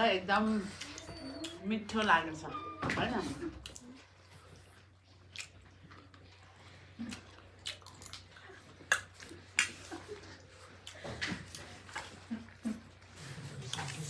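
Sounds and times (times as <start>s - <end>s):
chewing and biting: 3.6s - 14.0s.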